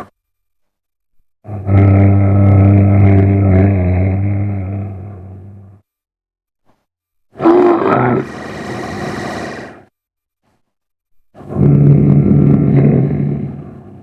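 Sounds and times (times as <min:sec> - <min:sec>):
deep rough creature vocalisations: 0:01.4 - 0:05.8, 0:07.4 - 0:09.9, 0:11.4 - 0:14.0.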